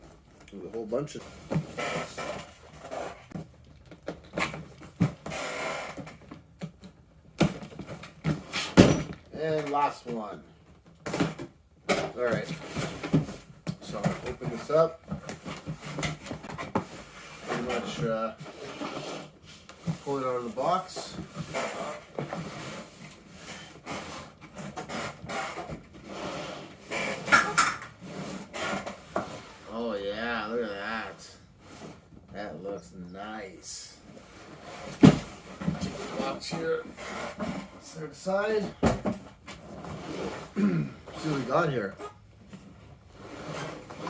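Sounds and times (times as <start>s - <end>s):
cardboard scraping rustle: 0.0s - 3.7s, 12.2s - 32.6s, 33.8s - 44.0s.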